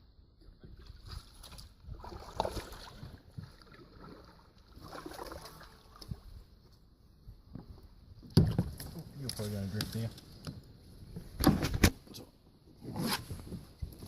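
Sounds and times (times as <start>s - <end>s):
water splashing and trickling: 0.4s - 6.6s
paddle dipping into water: 0.6s - 6.4s.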